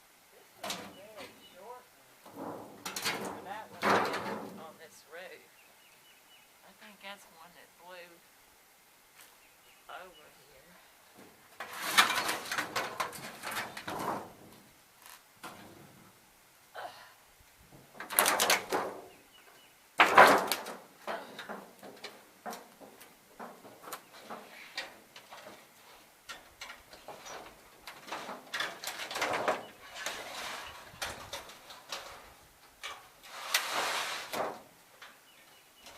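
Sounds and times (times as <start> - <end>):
roofing panel scraping and clattering: 2.2 - 4.7, 11.2 - 14.7, 15.4 - 16.1, 17.7 - 19.2, 20.0 - 35.1.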